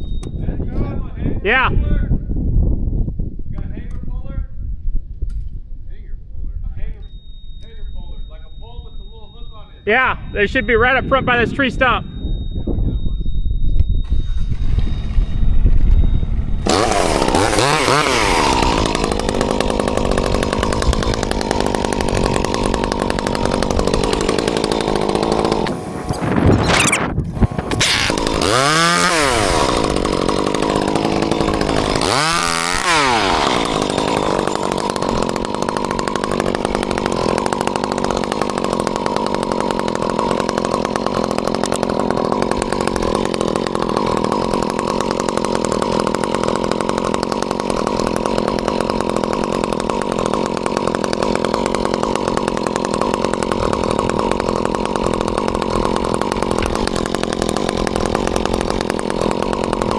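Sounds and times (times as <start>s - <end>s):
chainsaw revving: 14.1s - 15.6s, 16.6s - 59.9s.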